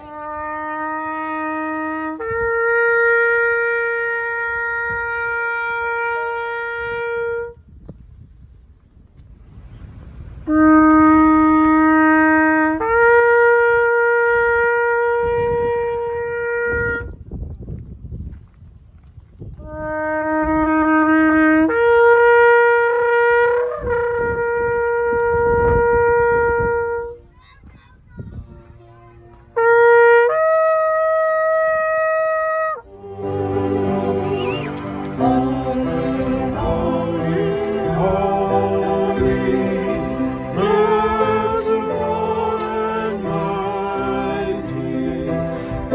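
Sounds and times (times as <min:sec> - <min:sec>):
ram's horn blasts: 0:10.5 - 0:17.1, 0:29.2 - 0:45.9.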